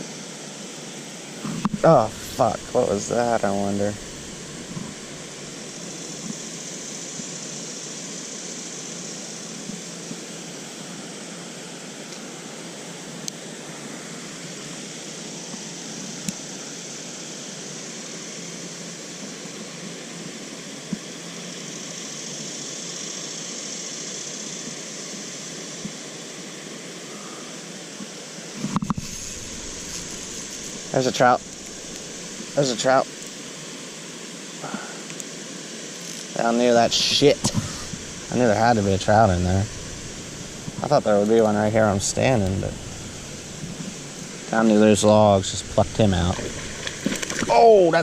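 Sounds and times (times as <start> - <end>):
stream water rushing: 0.5 - 7.4, 29.0 - 48.0.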